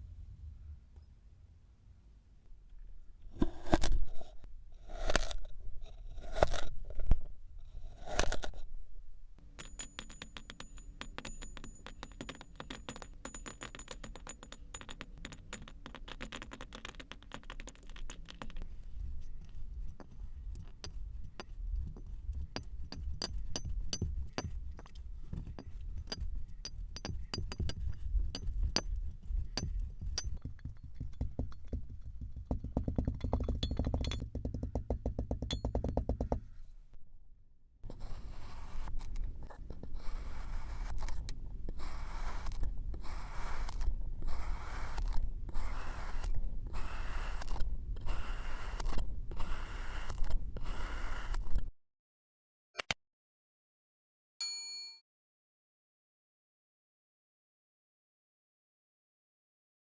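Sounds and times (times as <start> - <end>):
tool scraping kinetic sand: 3.4 - 6.8, 7.6 - 8.7, 15.6 - 32.8, 37.8 - 51.7.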